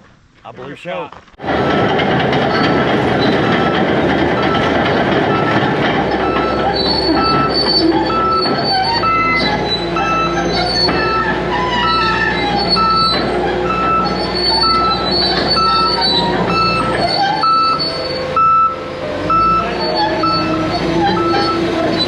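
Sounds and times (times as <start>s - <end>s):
backup alarm beeping: 1.4s - 22.0s
diesel engine running: 1.4s - 22.0s
steel tracks squealing and clanking: 1.4s - 22.0s.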